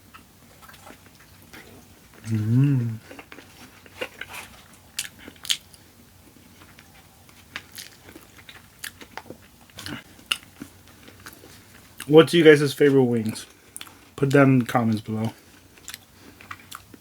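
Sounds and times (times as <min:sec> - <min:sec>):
wet chewing: 0:06.6 - 0:12.1.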